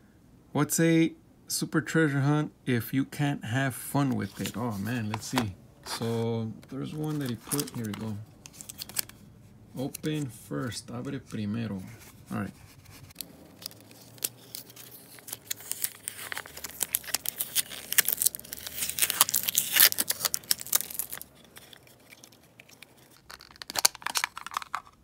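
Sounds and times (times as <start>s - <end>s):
packaging being torn: 6.9s - 9.2s, 12.9s - 25.0s.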